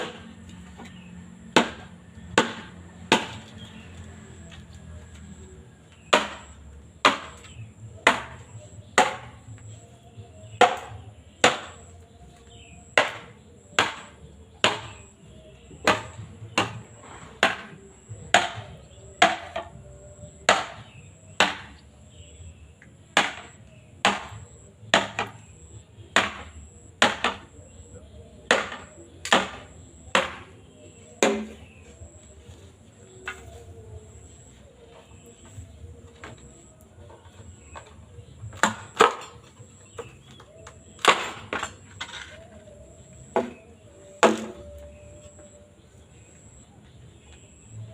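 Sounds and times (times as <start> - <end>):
chopping strikes on bamboo: 0.0 - 3.7, 6.0 - 11.9, 13.0 - 15.1, 15.8 - 19.8, 20.4 - 21.8, 23.2 - 25.6, 26.2 - 27.6, 28.5 - 31.8, 38.5 - 42.6, 43.3 - 44.8.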